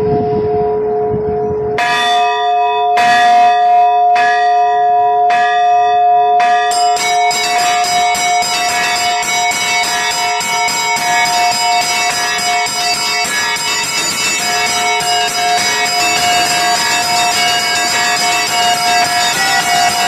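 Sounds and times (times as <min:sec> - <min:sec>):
large church bells ringing: 0:00.0 - 0:20.0
small bells rapid peal: 0:05.3 - 0:20.0.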